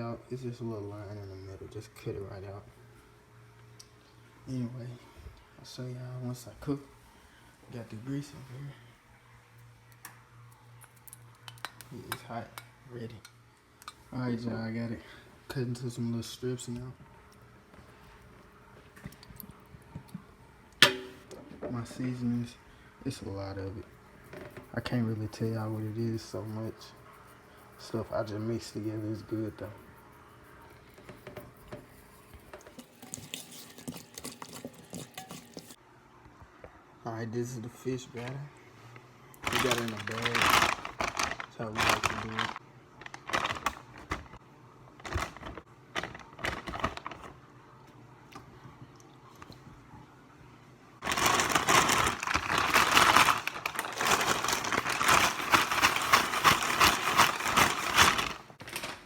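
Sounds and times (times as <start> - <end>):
plastic bag rustling and crinkling: 39.4 - 44.4, 45.0 - 47.4, 51.0 - 59.0.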